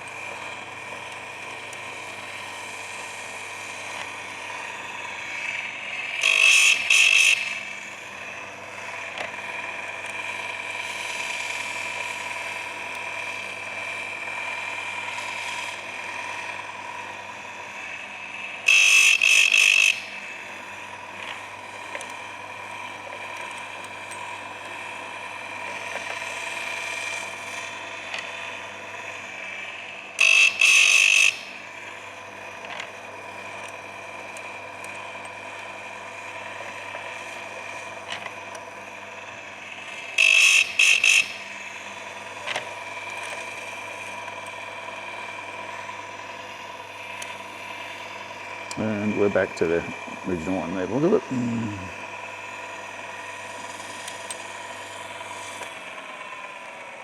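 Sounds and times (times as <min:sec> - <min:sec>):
sharpener motor running: 0:01.1 - 0:56.8
grinding wheel rasping on chain: 0:05.3 - 0:07.8, 0:18.7 - 0:20.2, 0:30.2 - 0:31.6, 0:40.0 - 0:41.6, 0:48.7 - 0:51.9.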